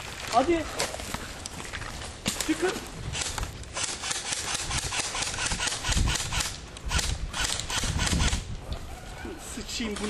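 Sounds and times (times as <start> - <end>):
running footsteps in dry leaves: 0.0 - 3.6.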